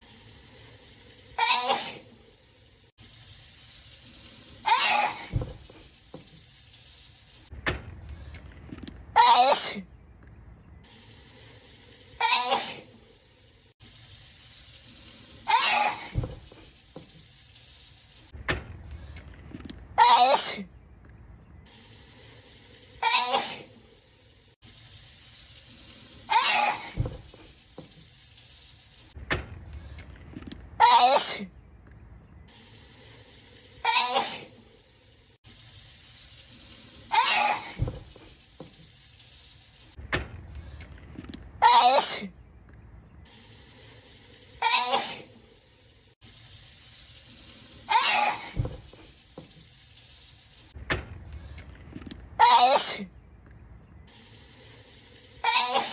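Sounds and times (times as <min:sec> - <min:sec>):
person sneezing: 0:01.4 - 0:02.1, 0:12.2 - 0:12.9, 0:23.0 - 0:23.7, 0:33.9 - 0:34.5, 0:44.6 - 0:45.3, 0:52.4 - 0:53.1, 0:55.5 - 0:55.9.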